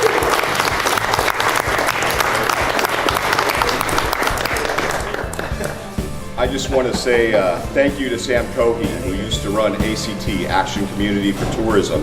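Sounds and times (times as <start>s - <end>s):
crowd applauding: 0.0s - 6.2s.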